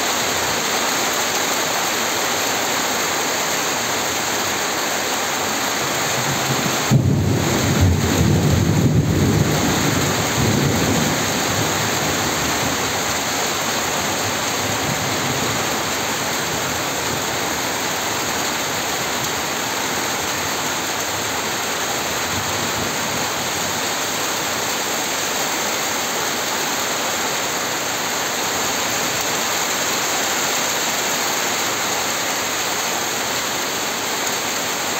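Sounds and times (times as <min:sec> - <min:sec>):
rain falling steadily: 0:00.0 - 0:34.9
thunder rumble: 0:06.2 - 0:12.6.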